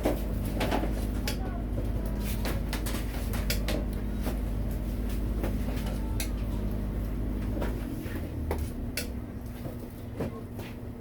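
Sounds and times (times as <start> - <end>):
low machine hum: 0.0 - 11.0.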